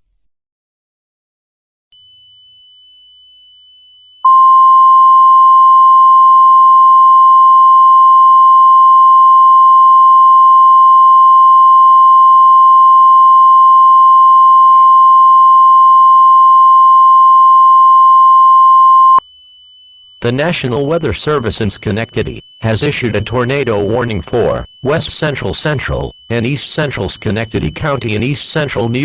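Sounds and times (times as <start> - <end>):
loud steady alarm tone: 2.0 - 29.0
faint high tones: 14.9 - 29.0.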